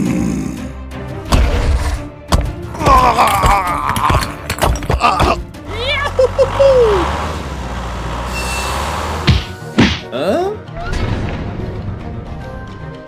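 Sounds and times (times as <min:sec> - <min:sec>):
background music: 0:00.0 - 0:13.0
sharp knocks and thuds: 0:01.2 - 0:05.4.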